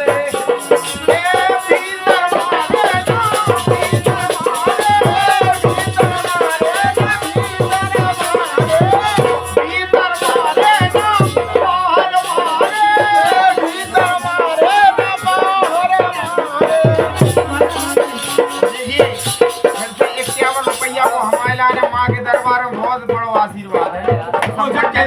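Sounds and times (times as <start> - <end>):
deep drum beats: 0.0 - 25.0
rattling percussion: 0.0 - 25.0
sliding folk melody: 7.4 - 19.2.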